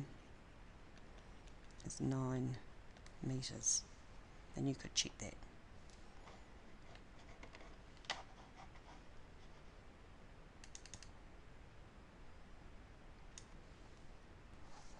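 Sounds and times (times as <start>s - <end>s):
faint clicks and ticks: 10.6s - 11.2s.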